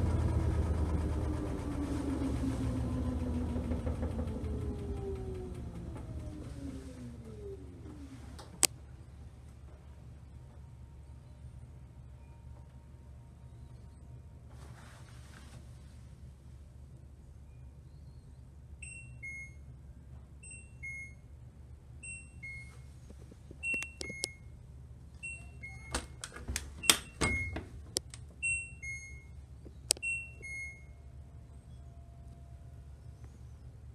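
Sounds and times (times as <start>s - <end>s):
washing machine two-note beep: 18.8s - 19.8s, 20.4s - 21.3s, 22.0s - 22.8s, 25.2s - 25.9s, 26.8s - 27.6s, 28.4s - 29.4s, 30.0s - 31.1s.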